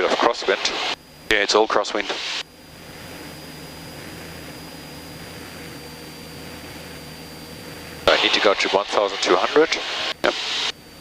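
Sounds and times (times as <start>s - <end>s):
aircraft engine and propeller droning: 0.0s - 11.0s
faint high whine: 0.0s - 11.0s.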